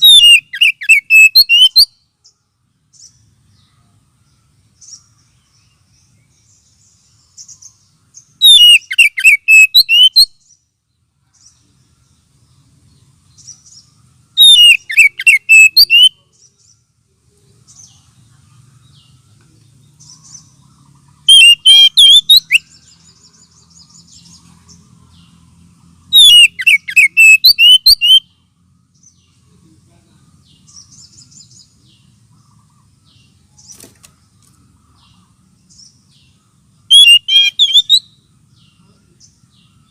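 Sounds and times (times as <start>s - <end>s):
bird whistled song phrases: 0.0s - 2.0s, 8.4s - 10.5s, 14.4s - 16.3s, 21.2s - 23.3s, 26.1s - 28.4s, 36.9s - 38.9s
faint bird chirps: 0.0s - 39.9s.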